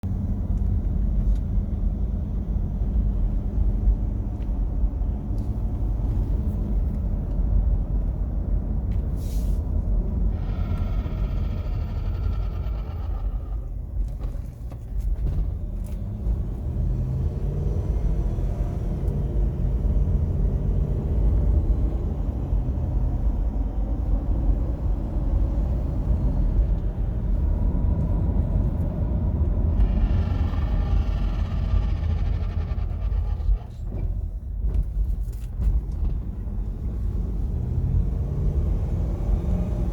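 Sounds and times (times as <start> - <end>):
car cabin rumble: 0.1 - 16.4, 23.2 - 36.9
high whining tone: 10.3 - 13.8.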